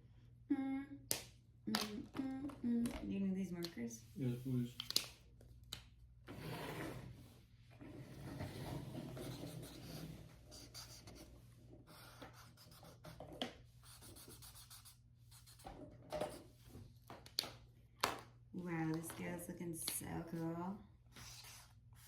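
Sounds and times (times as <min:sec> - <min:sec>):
markers scratching on paper: 0:09.2 - 0:11.3, 0:11.9 - 0:13.2, 0:13.8 - 0:15.7, 0:21.2 - 0:22.0.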